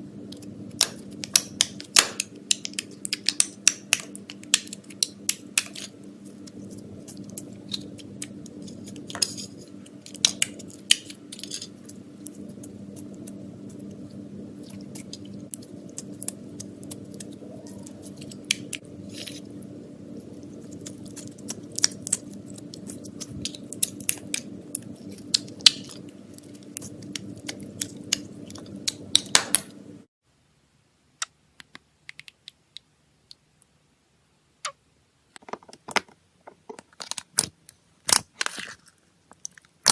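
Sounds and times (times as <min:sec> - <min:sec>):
steady low hum: 0:00.0 - 0:31.0
sticky clicks and pops: 0:00.8 - 0:05.8.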